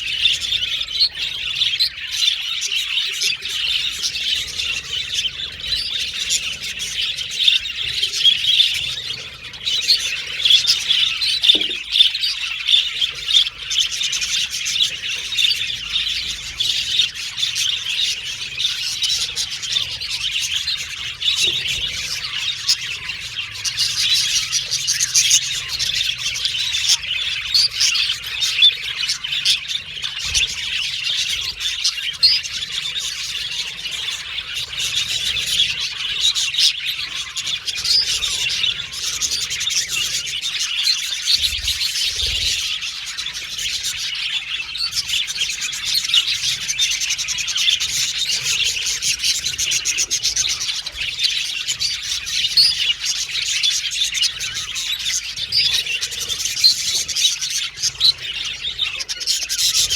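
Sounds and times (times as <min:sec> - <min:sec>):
budgerigars chirping and warbling: 0:00.0 - 0:59.9.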